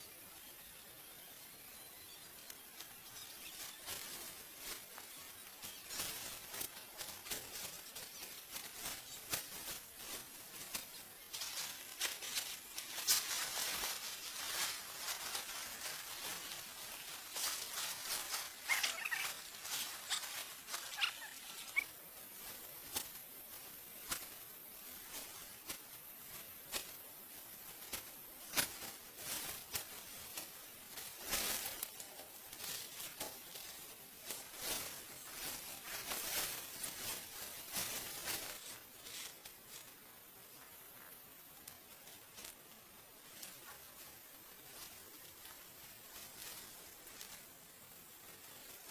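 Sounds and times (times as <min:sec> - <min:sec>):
rustling swishes: 0:03.5 - 0:27.0.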